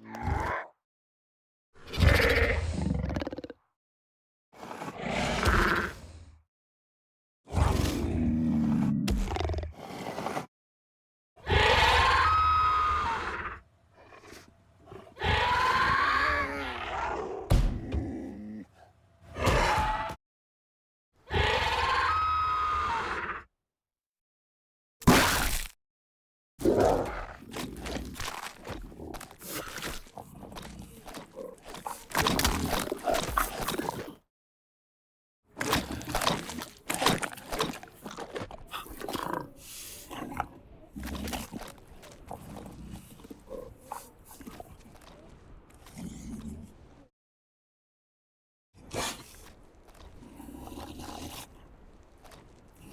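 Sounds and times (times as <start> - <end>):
creature growls: 0.0 - 0.8, 1.9 - 3.6, 4.6 - 6.2, 7.5 - 10.5, 11.4 - 20.2, 35.6 - 47.1, 48.8 - 51.7
growling call with bird-like tone: 11.4 - 20.2.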